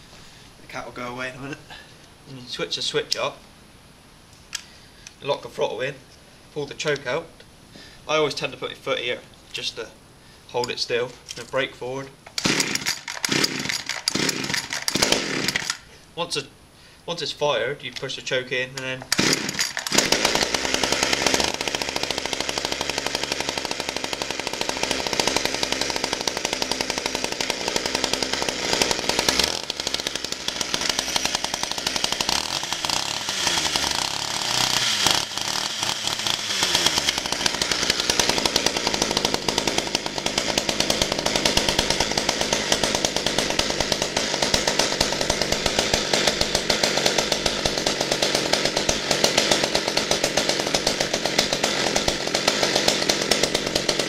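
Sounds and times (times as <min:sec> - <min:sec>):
two-stroke chainsaw running: 0:12.3 - 0:15.9, 0:18.8 - 0:54.0.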